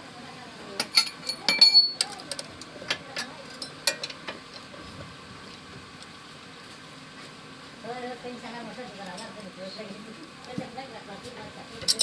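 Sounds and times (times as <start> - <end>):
metal tools clinking: 0.8 - 4.7.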